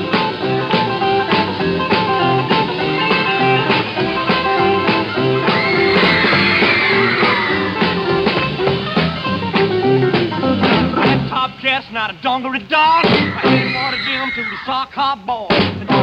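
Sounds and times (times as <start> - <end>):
electric guitar: 0.0 - 14.7
fast steady drum beat: 0.0 - 16.0
high wavering squeals: 0.2 - 9.4, 13.0 - 14.8.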